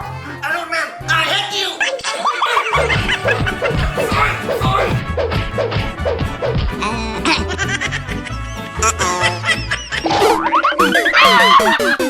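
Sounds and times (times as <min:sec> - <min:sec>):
playful background music: 0:00.0 - 0:12.0
cartoon sound effects: 0:06.8 - 0:07.6, 0:10.0 - 0:12.0.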